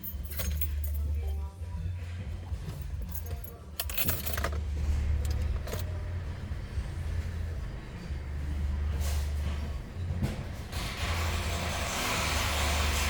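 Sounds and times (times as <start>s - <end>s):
metallic clinks and rattles: 0.0s - 1.4s, 2.5s - 5.9s
car engine idling: 4.4s - 10.8s.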